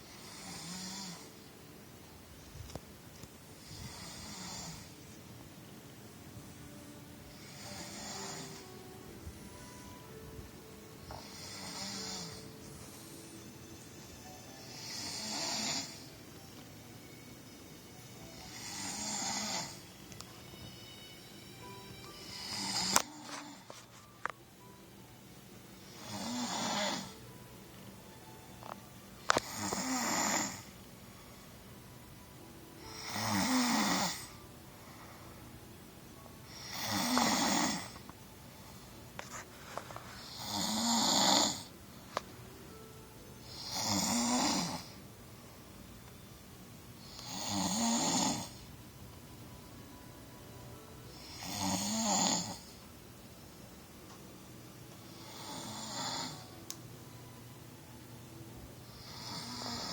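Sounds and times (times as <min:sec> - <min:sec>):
person snoring: 0:00.1 - 0:01.3, 0:03.6 - 0:04.9, 0:07.3 - 0:08.7, 0:11.1 - 0:12.5, 0:14.6 - 0:16.1, 0:18.3 - 0:19.8, 0:22.3 - 0:23.7, 0:25.9 - 0:27.2, 0:29.3 - 0:30.7, 0:32.8 - 0:34.4, 0:36.5 - 0:38.0, 0:40.2 - 0:41.7, 0:43.5 - 0:45.0, 0:47.0 - 0:48.6, 0:51.1 - 0:52.8, 0:55.1 - 0:56.5, 0:58.9 - 0:59.9.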